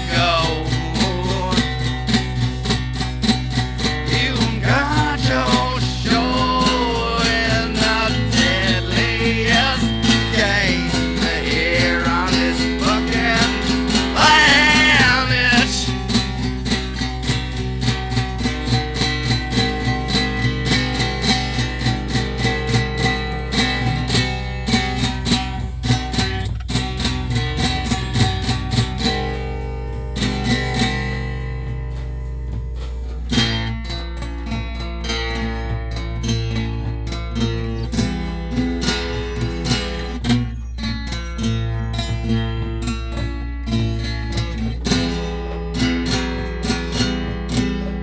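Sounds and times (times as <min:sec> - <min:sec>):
strummed acoustic guitar: 0:00.0 - 0:48.0
person singing with vibrato: 0:04.1 - 0:16.0.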